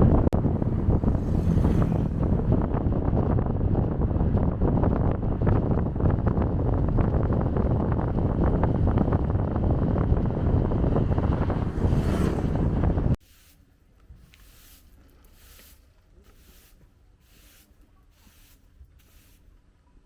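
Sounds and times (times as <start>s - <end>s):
wind buffeting microphone: 0.0s - 13.2s.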